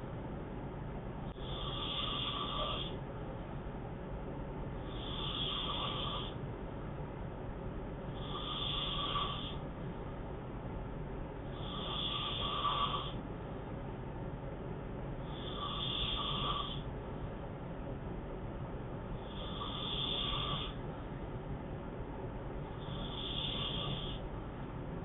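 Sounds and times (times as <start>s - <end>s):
man snoring: 1.4s - 3.0s, 4.8s - 6.4s, 8.2s - 9.6s, 11.6s - 13.2s, 15.3s - 16.8s, 19.2s - 20.8s, 22.8s - 24.2s.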